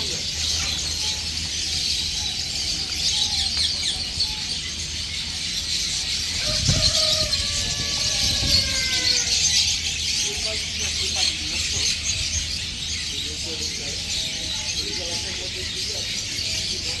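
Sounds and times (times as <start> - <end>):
small caged birds chirping: 0.0 - 17.0
rooster crowing: 6.4 - 9.6.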